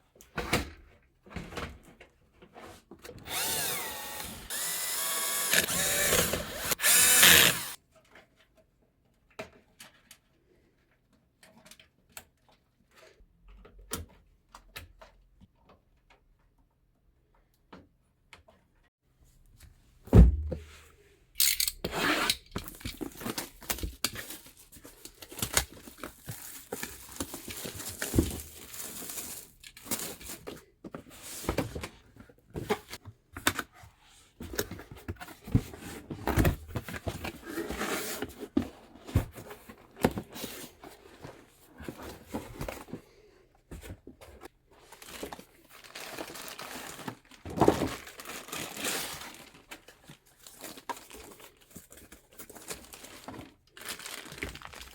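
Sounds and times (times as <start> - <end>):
packaging crinkling and tearing: 22.6 - 30.5, 44.8 - 54.9.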